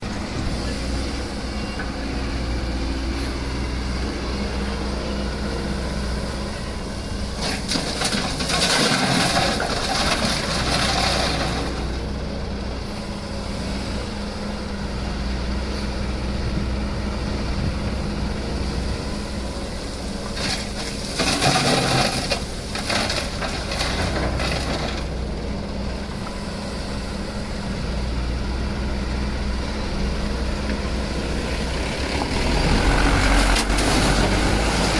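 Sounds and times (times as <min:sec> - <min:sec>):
excavator diesel engine running: 0:00.0 - 0:34.9
rushing scraping noise: 0:07.4 - 0:11.9, 0:20.4 - 0:25.1, 0:32.0 - 0:34.9.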